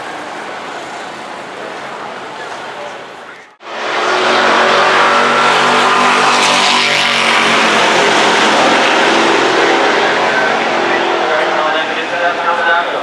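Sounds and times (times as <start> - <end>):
jet engines roaring with whine: 3.2 - 13.0.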